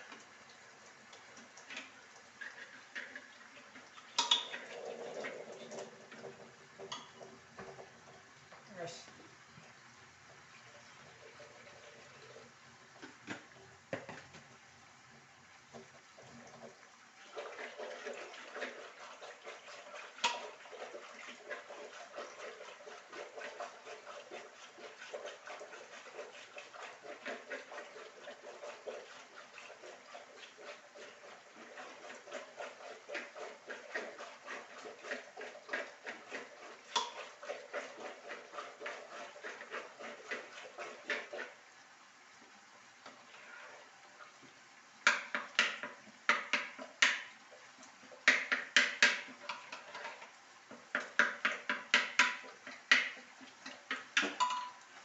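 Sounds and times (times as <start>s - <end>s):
metal spoon scraping a pot: 17.4s - 41.6s, 48.2s - 50.3s
spoon clinking against pot: 54.2s - 54.8s.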